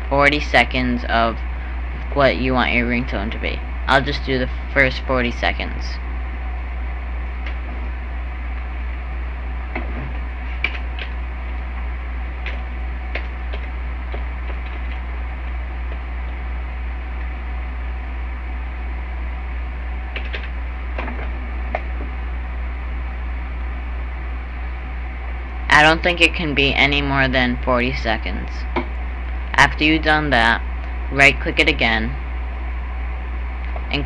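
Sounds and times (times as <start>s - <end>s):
low hum and hiss: 0.0s - 34.0s.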